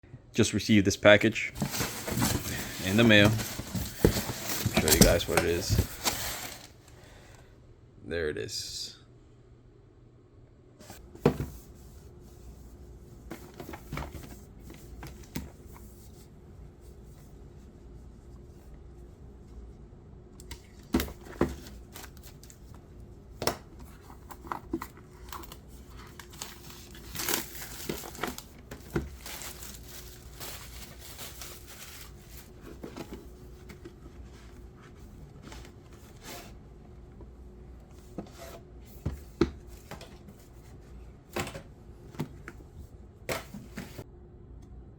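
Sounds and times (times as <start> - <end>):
packaging tearing and crinkling: 25.2 - 32.3.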